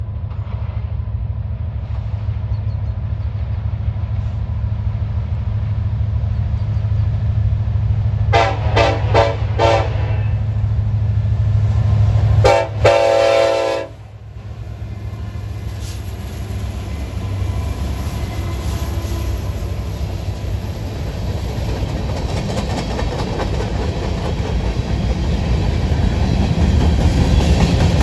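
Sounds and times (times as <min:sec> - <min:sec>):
locomotive air horn blasts: 0:08.3 - 0:10.4, 0:12.4 - 0:14.1.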